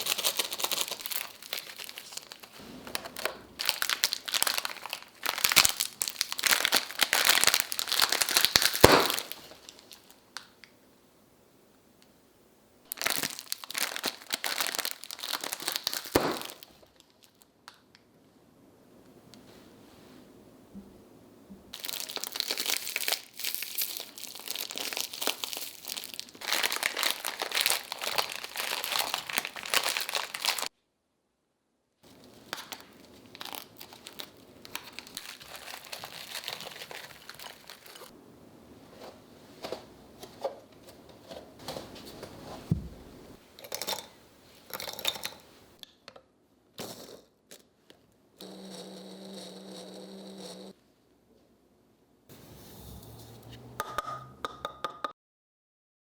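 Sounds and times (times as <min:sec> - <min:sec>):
plastic packaging crinkling and tearing: 0:00.0 - 0:10.5, 0:12.9 - 0:17.5, 0:21.7 - 0:30.7, 0:32.1 - 0:38.1.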